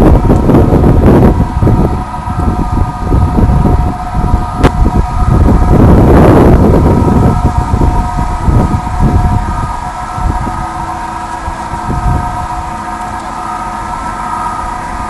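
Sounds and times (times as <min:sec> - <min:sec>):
machinery whine: 0:00.0 - 0:15.0
rush of noise: 0:00.0 - 0:15.0
wind buffeting microphone: 0:00.0 - 0:15.0.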